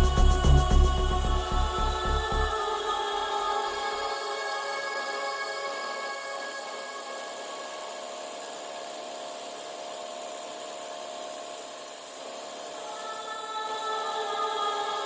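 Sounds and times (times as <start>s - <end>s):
dry rubbing noise: 0.0s - 2.5s
faint background music: 0.0s - 8.7s.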